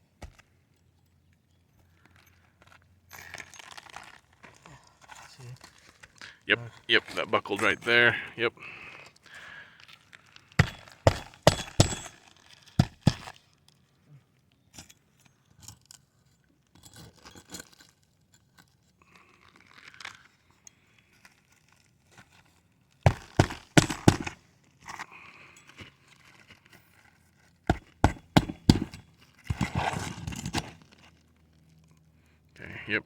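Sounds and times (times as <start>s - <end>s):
sharp knocks on shingles: 10.6s - 12.2s, 12.8s - 13.4s, 23.1s - 24.4s, 27.7s - 30.7s.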